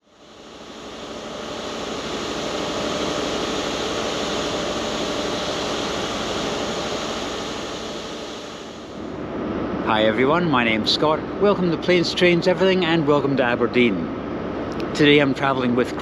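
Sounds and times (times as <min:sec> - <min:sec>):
faint steady hum: 0:00.0 - 0:16.0
railway station machine noise: 0:00.0 - 0:16.0.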